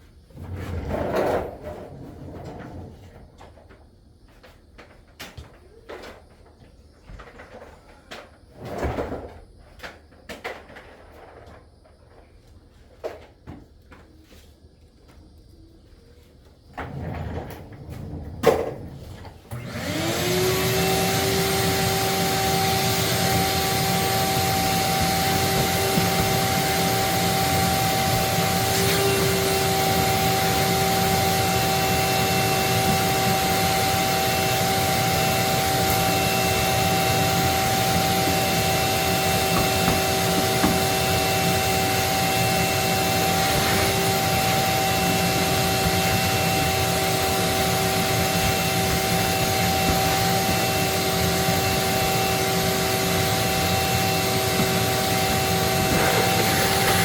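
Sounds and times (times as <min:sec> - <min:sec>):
vacuum cleaner running: 0:16.8 - 0:57.0.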